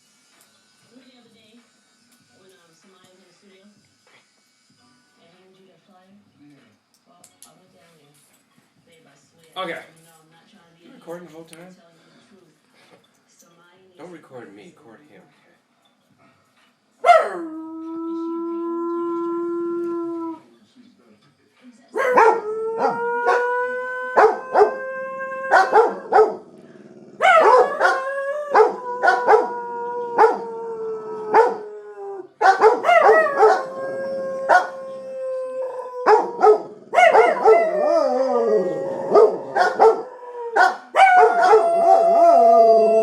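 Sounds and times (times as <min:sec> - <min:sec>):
dog barks: 0:17.0 - 0:17.4, 0:22.0 - 0:22.4, 0:25.5 - 0:26.4, 0:27.2 - 0:28.0, 0:32.4 - 0:33.7, 0:36.0 - 0:37.6, 0:39.1 - 0:41.6
dogs howling: 0:17.0 - 0:20.5, 0:22.0 - 0:43.0.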